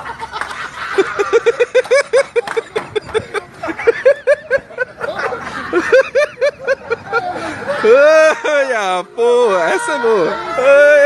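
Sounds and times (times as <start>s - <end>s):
person laughing hard: 0.0s - 8.7s.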